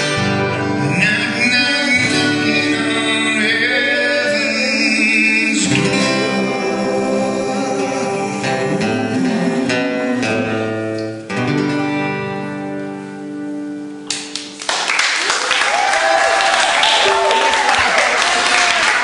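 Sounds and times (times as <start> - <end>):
acoustic guitar playing: 0.0 - 14.7
audience applauding: 14.1 - 19.0.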